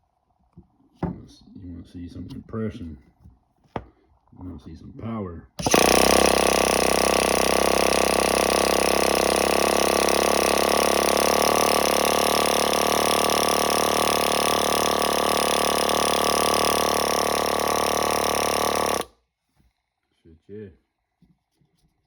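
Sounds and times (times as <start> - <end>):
small engine high-pitched buzz: 5.6 - 19.1.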